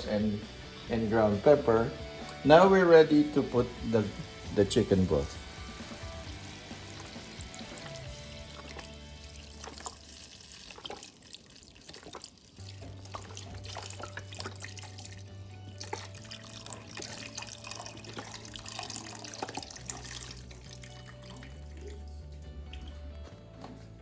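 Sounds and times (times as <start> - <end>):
soft background music: 0.0 - 10.8, 12.5 - 24.0
broth splashing into pot: 5.4 - 22.1.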